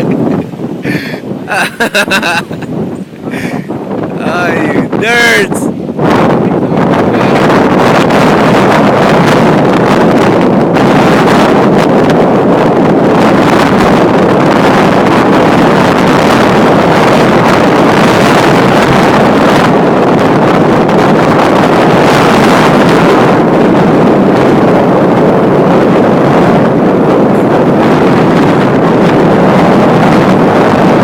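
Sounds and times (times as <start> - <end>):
wind blowing across microphone: 0.0 - 31.0.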